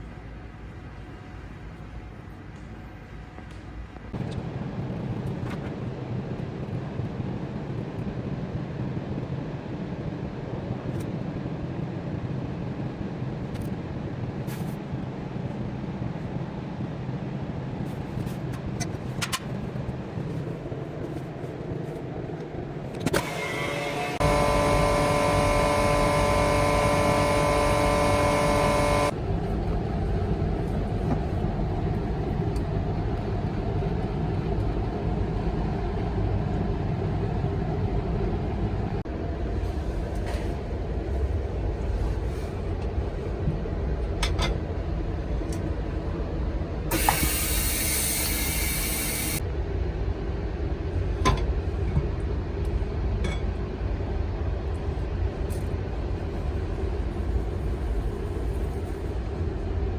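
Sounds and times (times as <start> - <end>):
low machine hum: 0.0 - 59.9
electric motor whine: 23.1 - 29.1, 47.0 - 49.4.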